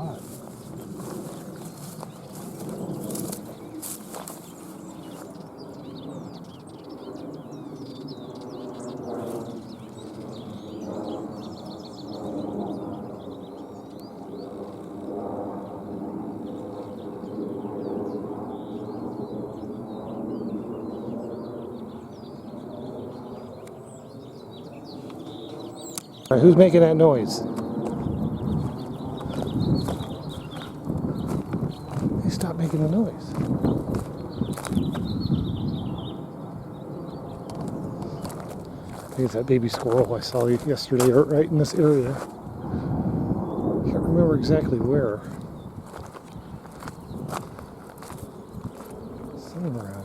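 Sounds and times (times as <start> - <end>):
songbirds chirping: 0.0 - 50.0.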